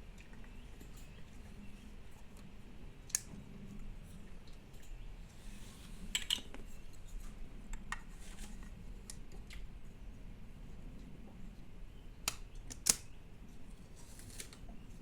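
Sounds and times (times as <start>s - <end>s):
faint low hum: 0.0s - 15.0s
small toys clicking and tapping: 12.3s - 13.1s.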